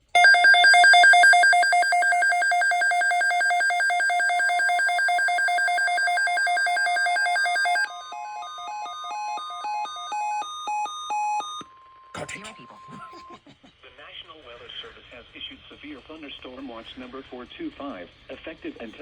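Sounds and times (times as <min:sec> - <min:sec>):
rapid electronic alarm beeping: 0:00.2 - 0:11.6.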